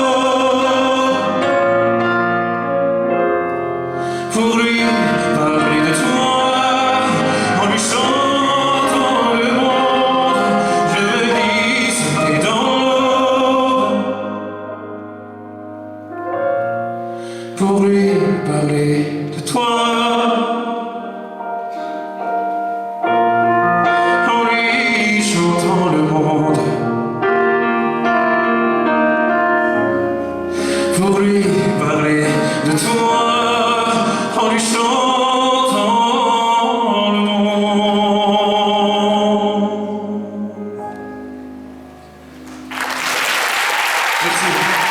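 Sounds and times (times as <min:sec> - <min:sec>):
person singing wordlessly: 0:04.2 - 0:14.4
instrumental accompaniment: 0:20.9 - 0:25.5, 0:40.4 - 0:44.9
audience applause: 0:42.4 - 0:44.9.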